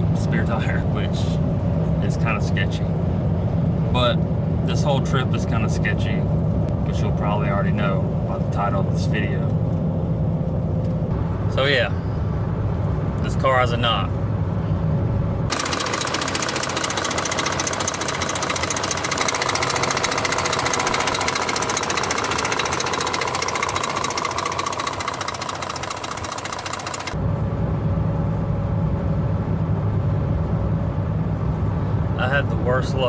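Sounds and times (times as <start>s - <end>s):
low drone of car on road: 0.0s - 33.0s
car engine with rapid knocking: 15.5s - 27.2s.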